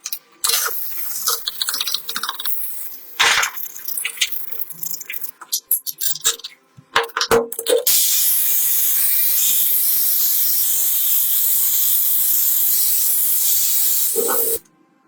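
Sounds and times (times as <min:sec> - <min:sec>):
high-pitched hiss from nozzle: 0:00.5 - 0:03.9, 0:07.9 - 0:14.6.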